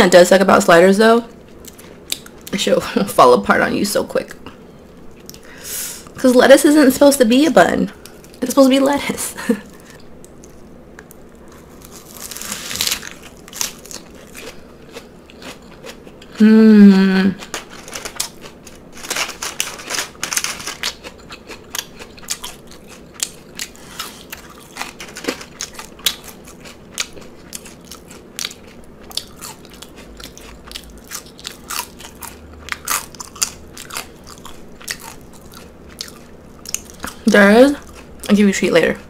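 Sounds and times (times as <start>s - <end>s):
chewing with crunching lettuce: 1.4s - 2.6s, 4.8s - 5.5s, 9.6s - 16.5s, 17.4s - 39.0s.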